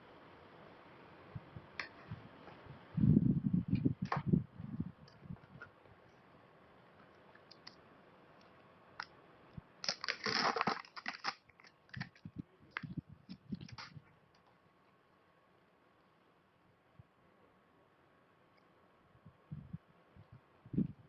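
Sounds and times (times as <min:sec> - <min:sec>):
crackling rustle: 0:05.0 - 0:15.0.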